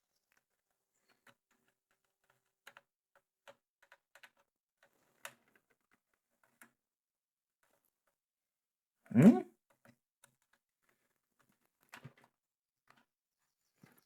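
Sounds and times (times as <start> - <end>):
small clicks and taps: 1.1 - 6.8.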